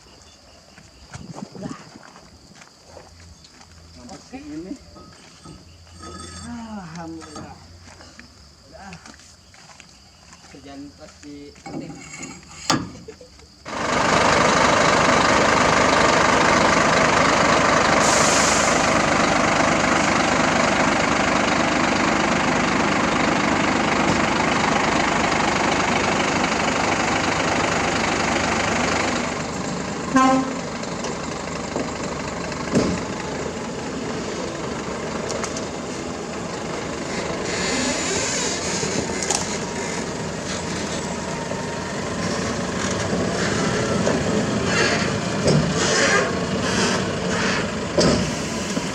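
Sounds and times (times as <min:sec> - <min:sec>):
heavy diesel engine running: 0:13.6 - 0:48.9
short horn toot: 0:30.1 - 0:30.6.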